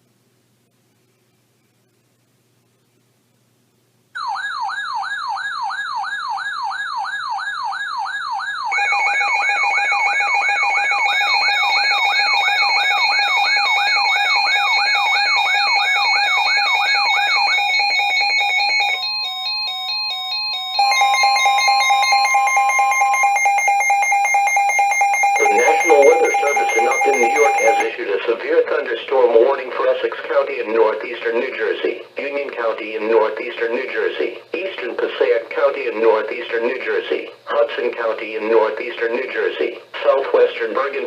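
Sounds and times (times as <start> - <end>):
electronic siren tone wailing: 4.2 - 27.9
pulsing alarm tone: 4.2 - 27.9
steady tone: 20.8 - 27.8.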